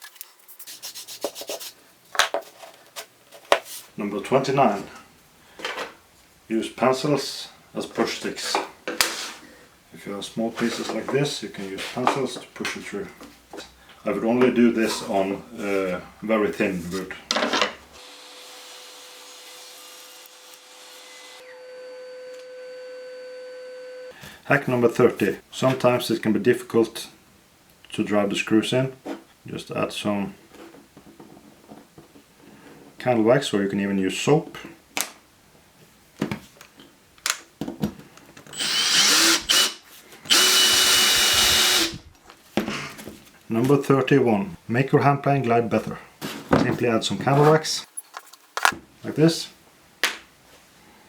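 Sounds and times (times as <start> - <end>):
power saw whining: 20.2 - 24.1, 38.5 - 42.0
power drill driving screw: 38.5 - 42.0.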